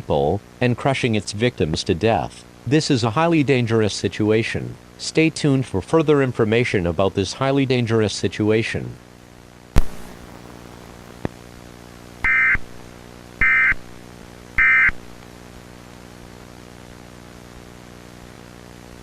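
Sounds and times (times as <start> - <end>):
steady hum and static: 0.0 - 19.0
digital data tone bursts: 13.4 - 13.8, 14.6 - 15.0.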